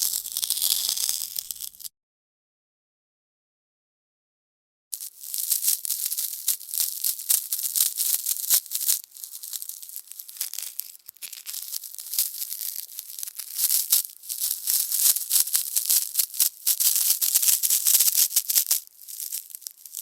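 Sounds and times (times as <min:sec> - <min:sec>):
dry high-pitched rattling: 0:00.0 - 0:01.9.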